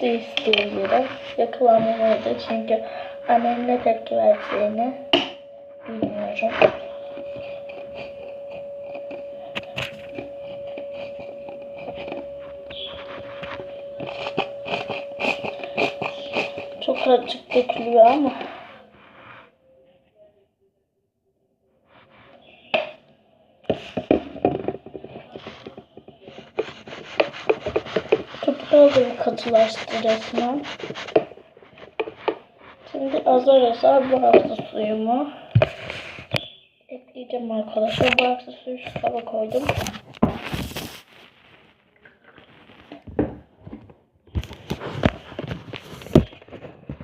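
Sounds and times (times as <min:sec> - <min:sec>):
crackling and rustling: 0:05.8 - 0:19.2, 0:23.7 - 0:36.5, 0:37.8 - 0:47.0.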